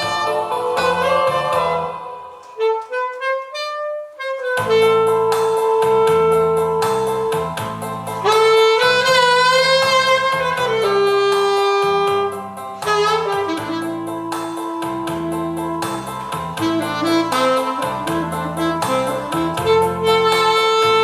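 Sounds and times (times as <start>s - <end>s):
accompaniment with steady beat: 0.0s - 21.0s
solo saxophone melody: 0.0s - 21.0s.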